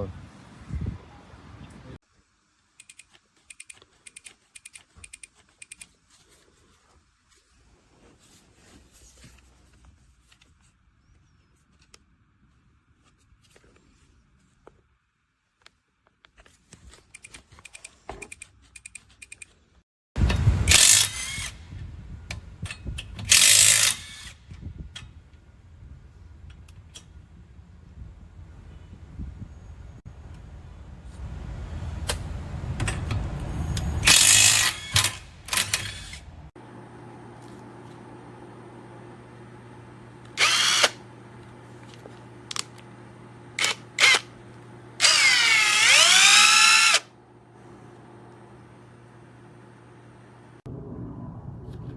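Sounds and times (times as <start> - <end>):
impact wrench bursts: 23.3 - 24.4, 34.0 - 36.2, 40.4 - 41.0, 43.6 - 44.3, 45.0 - 47.1.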